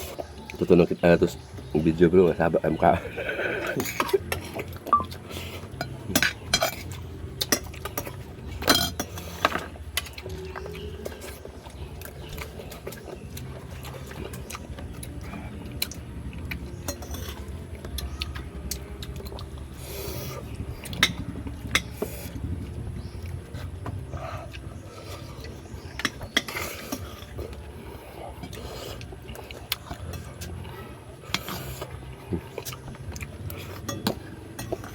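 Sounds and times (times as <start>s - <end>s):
steady low hum: 0.0s - 34.9s
utensils clinking against pots: 0.1s - 13.0s, 16.7s - 19.4s, 20.8s - 22.4s, 25.8s - 27.5s, 33.5s - 34.9s.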